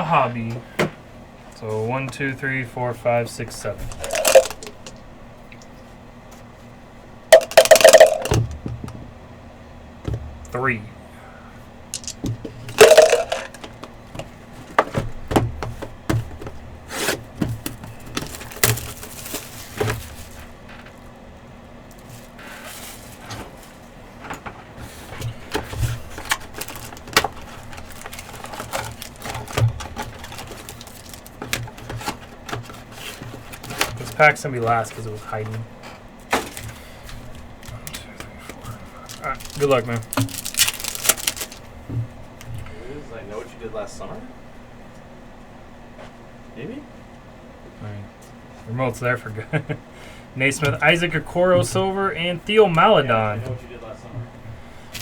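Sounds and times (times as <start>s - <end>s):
cards being handled: 3.8s - 5.0s, 12.0s - 13.8s, 25.7s - 34.2s, 36.5s - 41.7s
dice clattering on hard surface: 3.9s - 5.0s, 7.4s - 8.5s, 12.0s - 13.7s.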